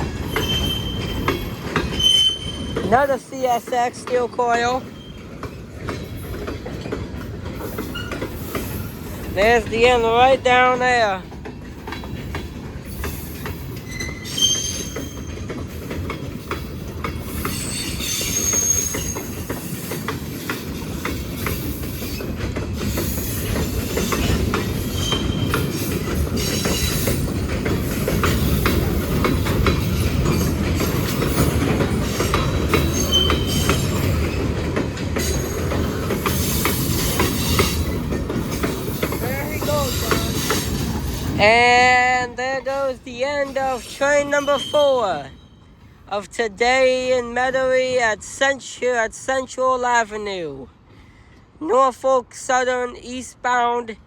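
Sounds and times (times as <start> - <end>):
wheels clicking over rail joints: 0.0 - 45.0
freight train cars rolling past: 0.0 - 54.0
high wheel squeals: 0.2 - 3.0, 12.9 - 15.4, 17.3 - 19.9, 23.0 - 27.2, 32.2 - 34.1, 43.7 - 45.8.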